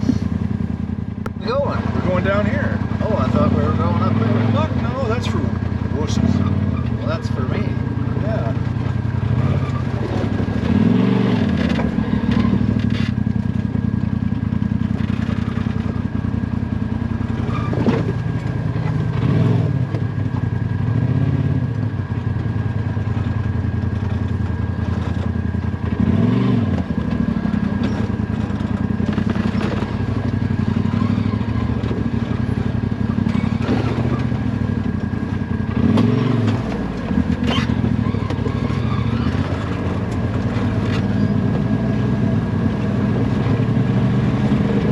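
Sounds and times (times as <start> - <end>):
utility vehicle engine revving: 0.0 - 44.9
sharp knocks and clatter: 26.7 - 32.5.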